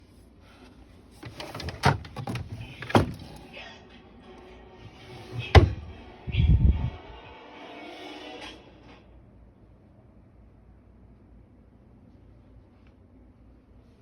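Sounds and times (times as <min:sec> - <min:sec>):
dull thump: 0:05.4 - 0:05.9.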